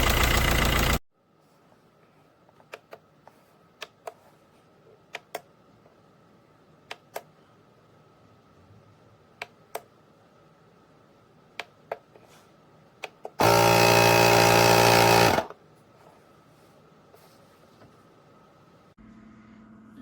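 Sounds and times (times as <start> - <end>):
small motor buzzing: 13.4 - 15.5.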